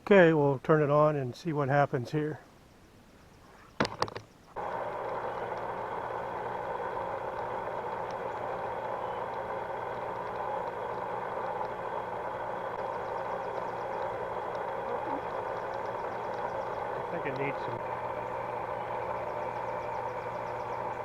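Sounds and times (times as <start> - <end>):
pool pump motor hum: 3.8 - 21.0
water circulating: 4.6 - 21.0.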